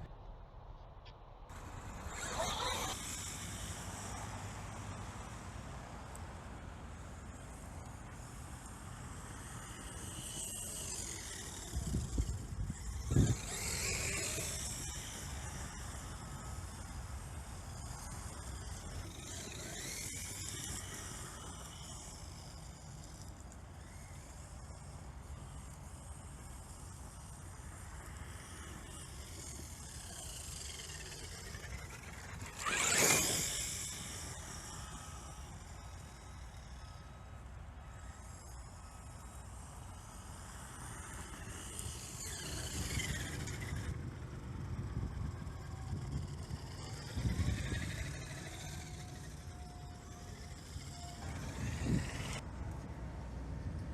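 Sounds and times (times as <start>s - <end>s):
distant electric motor whining: 1.5s - 53.9s
wind rumble on microphone: 11.0s - 19.0s, 51.2s - 52.4s.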